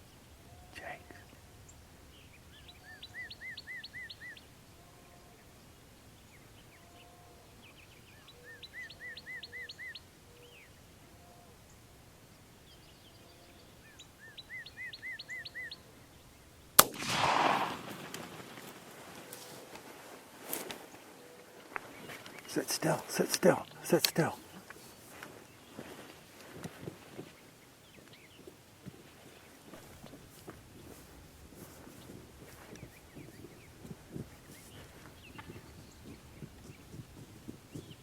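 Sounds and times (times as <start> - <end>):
songbird singing: 0.0 - 19.7, 20.8 - 38.0
shotgun shot: 16.8 - 18.7.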